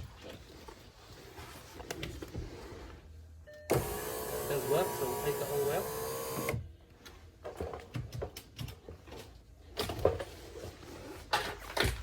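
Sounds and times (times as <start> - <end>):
electric window motor humming: 3.7 - 6.6.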